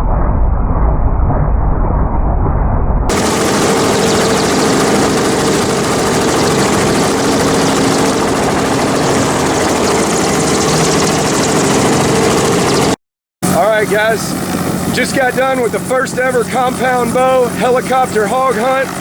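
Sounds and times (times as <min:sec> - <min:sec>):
dull low rumble: 0:00.0 - 0:12.8
helicopter running: 0:03.1 - 0:19.0.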